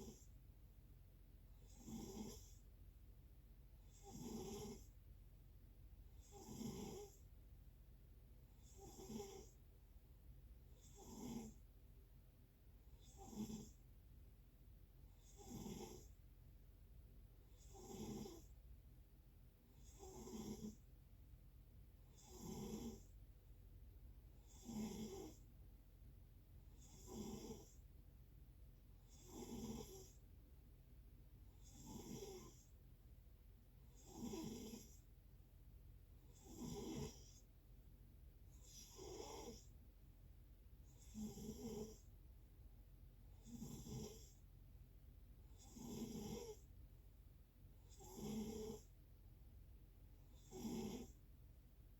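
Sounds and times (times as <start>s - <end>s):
person snoring faintly: 0.0s - 0.3s, 1.6s - 2.6s, 3.9s - 4.9s, 6.2s - 7.2s, 8.6s - 9.6s, 10.8s - 11.6s, 13.0s - 13.8s, 15.2s - 16.2s, 17.6s - 18.5s, 19.8s - 20.8s, 22.1s - 23.1s, 24.4s - 25.4s, 26.8s - 27.8s, 29.1s - 30.2s, 31.6s - 32.7s, 34.0s - 35.0s, 36.3s - 37.4s, 38.6s - 39.7s, 40.9s - 42.1s, 43.4s - 44.4s, 45.6s - 46.6s, 47.9s - 48.9s, 50.4s - 51.2s.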